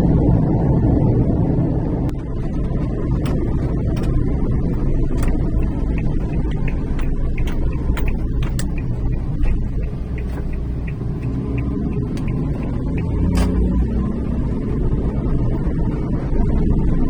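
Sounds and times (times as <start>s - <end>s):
strong wind: 0.0s - 17.0s
sharp ticks: 2.2s - 13.8s.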